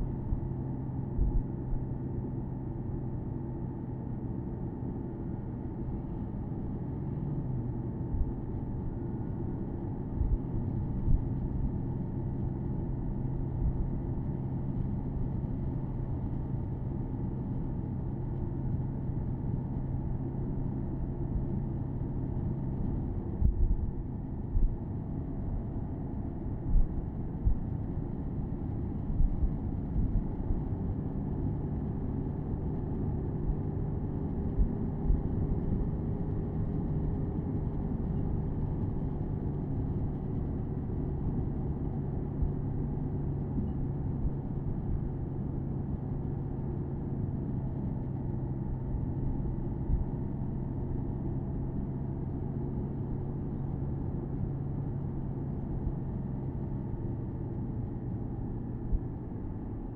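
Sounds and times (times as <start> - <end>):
road and wind rumble: 0.0 - 59.9
car engine cruising: 4.8 - 46.8.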